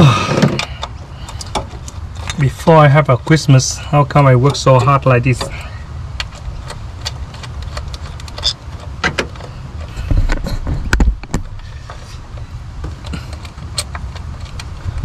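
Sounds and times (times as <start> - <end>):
wind rumble on microphone: 5.3 - 15.0.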